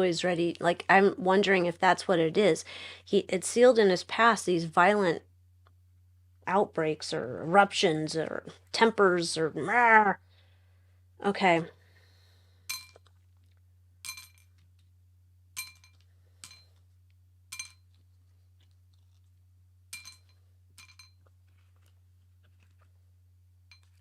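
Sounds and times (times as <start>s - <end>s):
low electrical hum: 0.0s - 24.0s
small hard objects clinking: 12.7s - 14.9s, 15.6s - 16.8s, 17.5s - 18.0s, 19.9s - 22.9s, 23.7s - 24.0s.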